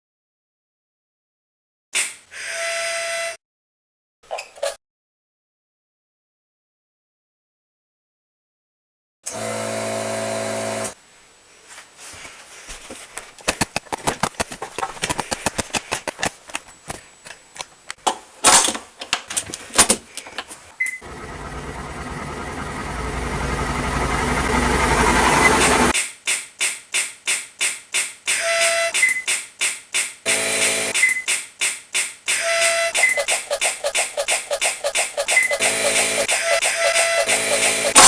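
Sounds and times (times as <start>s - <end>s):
machine rushing hum: 21.0s - 25.9s
rapid clicking pulses: 21.0s - 25.9s
rhythmic machine pulses: 21.0s - 25.9s.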